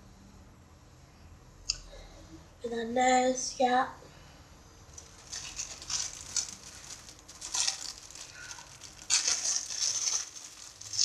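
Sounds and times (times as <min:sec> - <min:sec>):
plastic packaging crinkling: 0:04.9 - 0:11.0.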